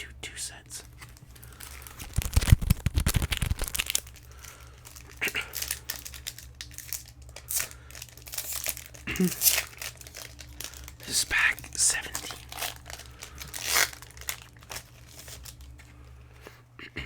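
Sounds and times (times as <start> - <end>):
foil wrappers crinkling: 0.8 - 16.6.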